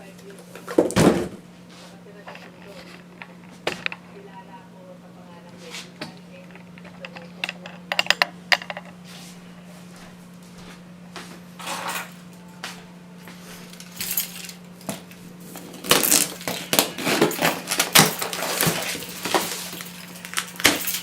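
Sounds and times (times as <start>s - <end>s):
steady low hum: 0.0s - 21.0s
hard objects clinking and clattering: 13.7s - 21.0s.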